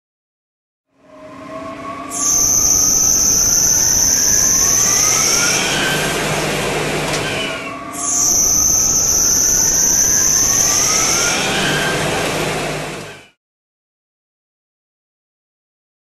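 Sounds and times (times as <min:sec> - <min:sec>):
lathe motor whine: 0:01.0 - 0:13.4.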